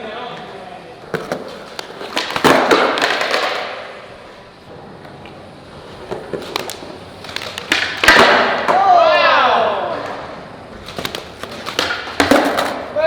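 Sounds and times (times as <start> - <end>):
skateboard rolling noise: 1.0 - 9.0, 9.7 - 13.0
skateboard clacks on concrete: 1.1 - 3.9, 6.0 - 8.8, 10.8 - 12.9.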